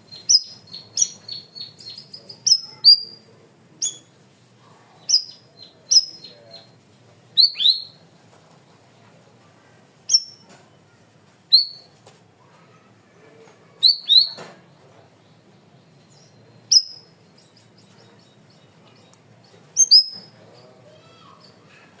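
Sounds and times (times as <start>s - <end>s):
songbird calling sharp notes: 0.0s - 4.1s, 5.0s - 6.8s, 7.4s - 8.0s, 10.1s - 10.5s, 11.5s - 11.9s, 13.8s - 14.4s, 15.3s - 20.4s.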